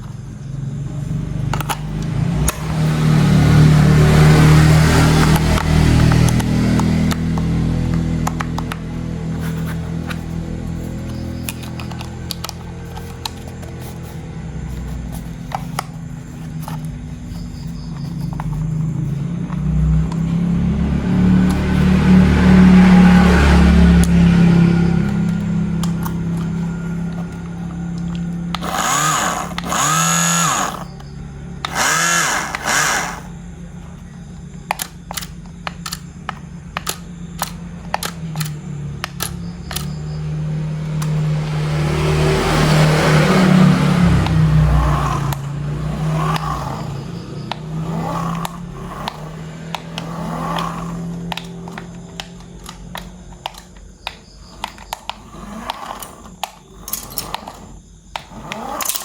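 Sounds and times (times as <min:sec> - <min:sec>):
small electric motor running: 0:00.9 - 0:53.8, 0:54.4 - 0:59.0
whine rising and falling: 0:01.2 - 0:34.2
plastic clicks and clatter: 0:01.4 - 0:02.7, 0:05.2 - 0:20.4, 0:34.6 - 0:40.0, 0:47.4 - 0:59.0.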